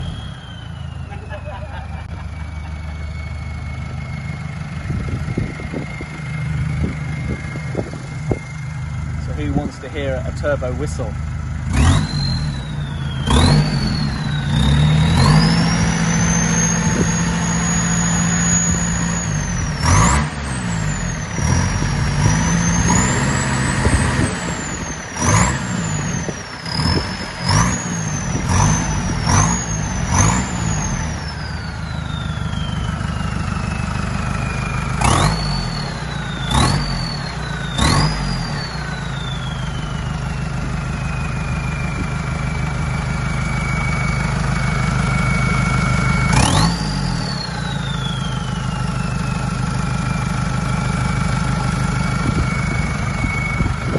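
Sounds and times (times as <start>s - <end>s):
diesel engine revving: 0.0s - 53.9s
turbo whistle: 11.9s - 20.2s, 22.3s - 51.2s, 51.9s - 53.9s.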